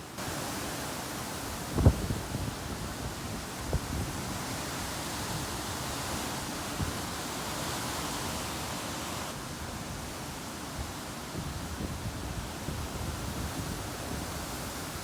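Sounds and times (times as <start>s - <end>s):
hurricane wind and rain hiss: 0.0s - 15.0s
wind gusts buffeting microphone: 0.2s - 7.2s, 10.8s - 15.0s.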